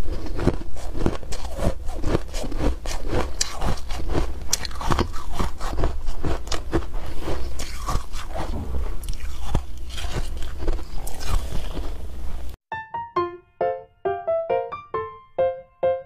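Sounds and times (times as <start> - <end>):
chewing crunchy ice: 0.0 - 12.6
piano music: 12.7 - 16.0.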